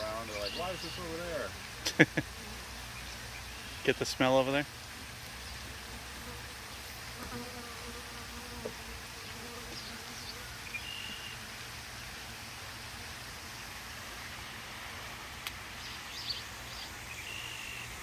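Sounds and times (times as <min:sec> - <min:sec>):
bees buzzing: 0:00.0 - 0:04.4, 0:05.4 - 0:11.4
close bee buzz: 0:05.8 - 0:11.4.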